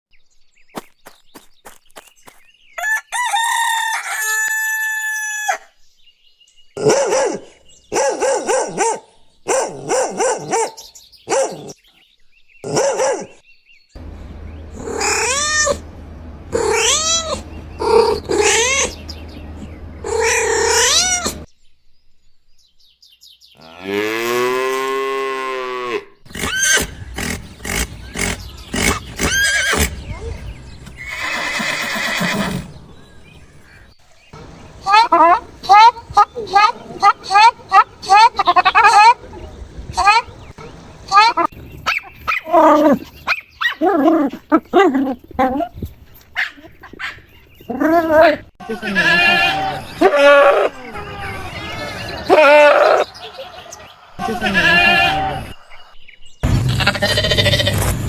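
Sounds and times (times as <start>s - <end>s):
low steady hum: 14.0s - 20.4s
farm animal calls: 14.0s - 21.5s, 23.6s - 32.8s, 33.6s - 57.9s.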